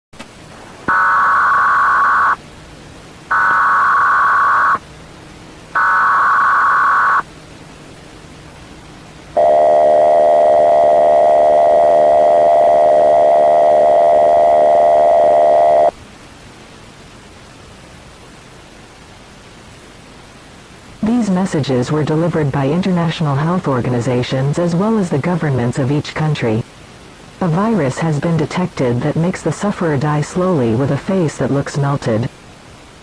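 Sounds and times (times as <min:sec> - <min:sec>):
static hiss: 0:00.2 - 0:33.0
warbling data tones: 0:00.8 - 0:02.4, 0:03.3 - 0:04.8, 0:05.8 - 0:07.3, 0:09.3 - 0:16.0
steady attention tone: 0:03.3 - 0:04.8, 0:05.7 - 0:07.3, 0:09.3 - 0:16.0.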